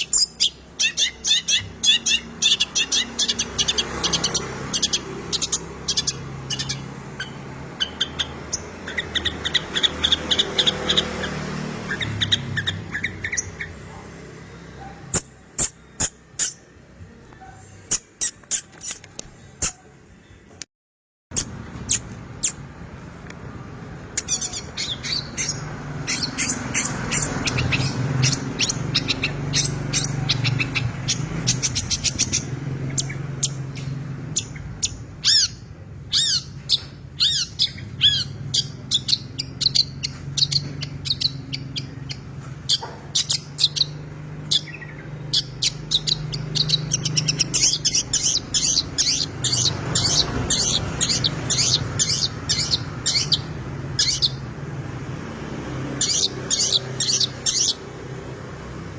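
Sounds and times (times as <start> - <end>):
bird singing chirps and whistles: 34.3 - 54.4.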